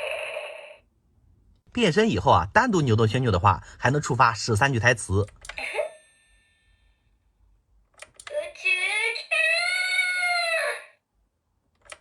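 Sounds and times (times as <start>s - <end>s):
high-pitched female voice from toy speaker: 0.0s - 0.8s, 8.3s - 11.0s.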